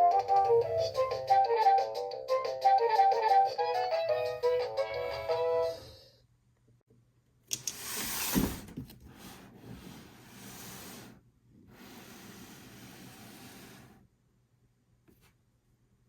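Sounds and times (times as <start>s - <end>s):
packaging rubbing and hissing: 7.7s - 11.2s.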